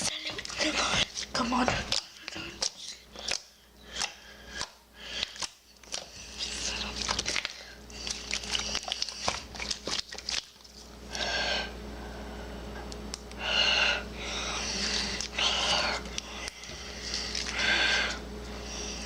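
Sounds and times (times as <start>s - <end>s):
slime squishing crackles: 0.1s - 10.9s.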